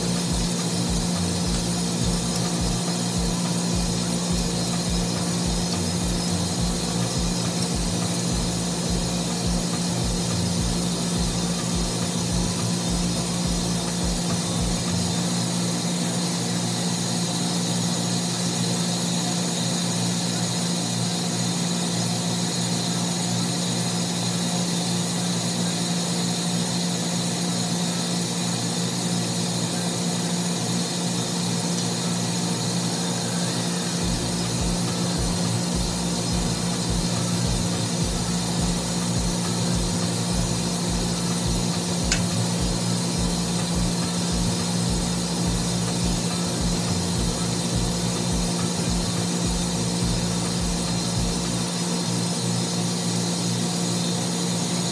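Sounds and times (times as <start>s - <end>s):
machinery droning: 0.0s - 18.3s, 31.7s - 52.1s
sharp click: 34.1s - 51.6s.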